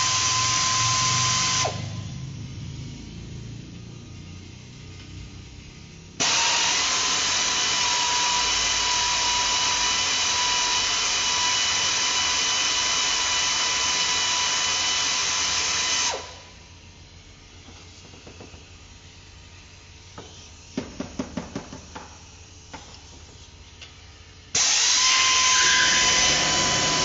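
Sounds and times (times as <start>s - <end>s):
power tool whining: 0.0s - 2.2s, 6.2s - 16.5s, 24.6s - 27.0s.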